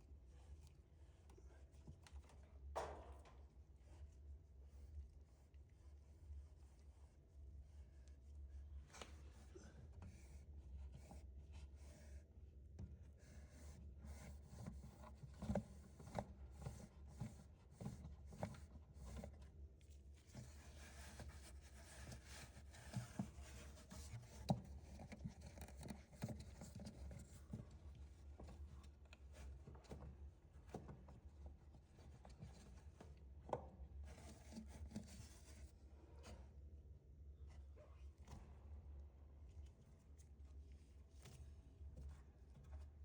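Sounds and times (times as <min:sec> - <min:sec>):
light clicks and taps: 0:12.7 - 0:31.2, 0:32.0 - 0:36.4
handling rubbing and scraping: 0:20.2 - 0:28.7.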